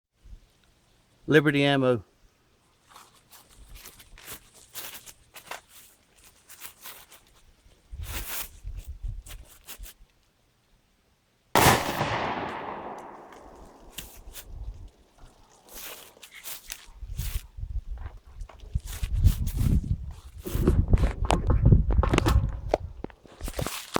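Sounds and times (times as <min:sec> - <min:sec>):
gunshot with long echo: 0:11.6 - 0:14.4.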